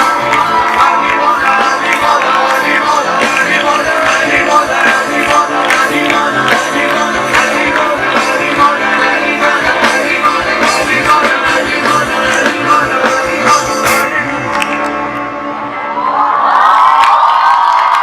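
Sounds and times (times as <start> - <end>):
drum beat: 0.0 - 14.1
live band music: 0.0 - 15.8.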